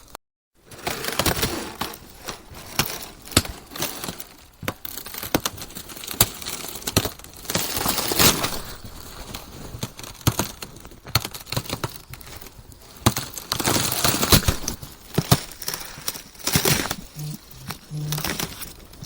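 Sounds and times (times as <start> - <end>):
constant ice crackle: 0.7 - 19.0.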